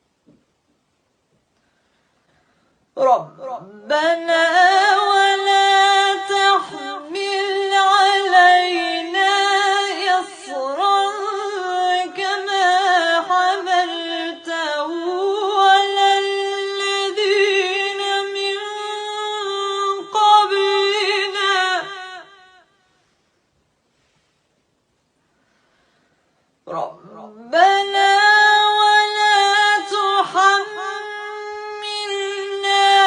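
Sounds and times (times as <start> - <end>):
woman chanting melodically: 3.0 - 22.6, 26.6 - 33.0.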